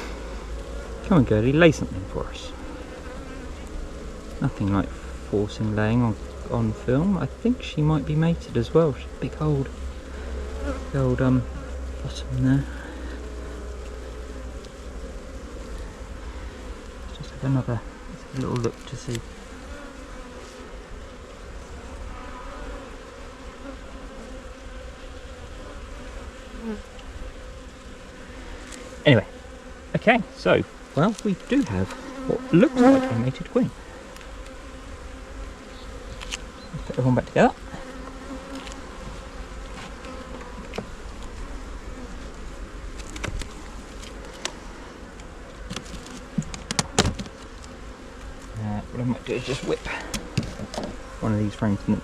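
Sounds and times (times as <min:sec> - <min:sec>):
bees flying close past: 0:00.0 - 0:52.0
honey bees buzzing: 0:00.0 - 0:52.0
clicks and knocks of hive parts: 0:18.2 - 0:19.3, 0:36.1 - 0:36.6, 0:38.0 - 0:41.5, 0:42.9 - 0:48.6, 0:49.5 - 0:51.1.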